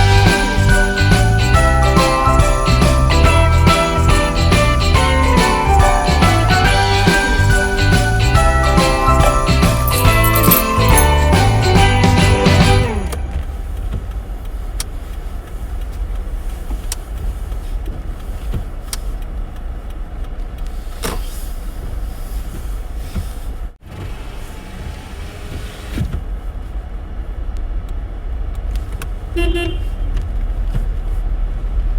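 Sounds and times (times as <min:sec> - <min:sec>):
road vehicle rumble: 0:00.0 - 0:31.9
faint clicks: 0:13.4 - 0:21.2.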